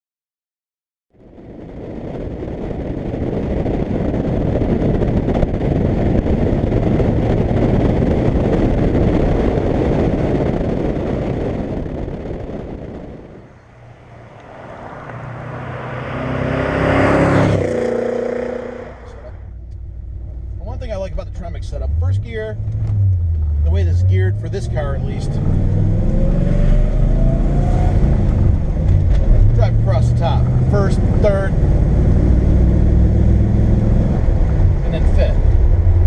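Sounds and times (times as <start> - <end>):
car driving past: 13.5 - 19.4, 22.6 - 34.6.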